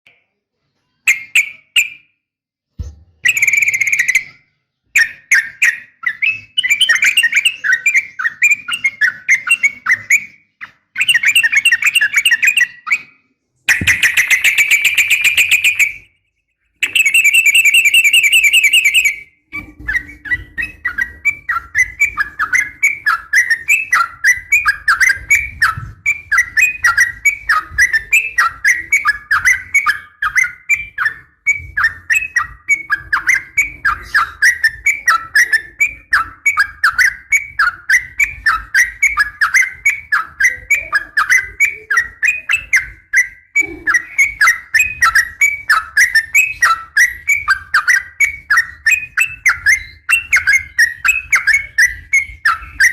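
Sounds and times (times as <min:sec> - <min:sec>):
bird chattering rapid notes: 0:13.7 - 0:16.1.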